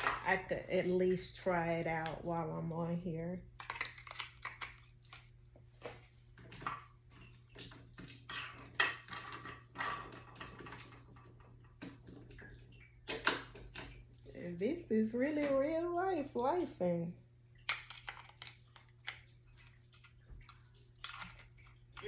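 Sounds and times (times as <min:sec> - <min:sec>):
small plastic clicks and clatters: 0:03.6 - 0:05.3, 0:17.6 - 0:22.0.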